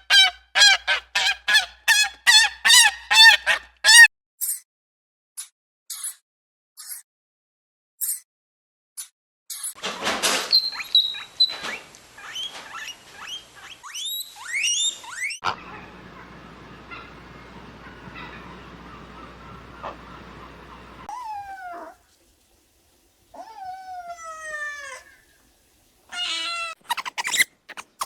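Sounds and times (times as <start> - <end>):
animal squeaks and chirps: 0.1 - 4.6, 5.9 - 6.2, 10.4 - 15.5, 26.1 - 28.0
steady hiss: 15.6 - 21.1, 21.9 - 23.4, 24.7 - 26.2.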